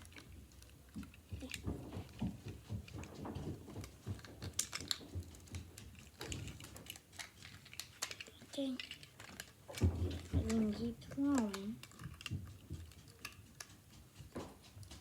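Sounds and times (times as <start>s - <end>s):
plastic bricks clicking: 4.2s - 13.7s.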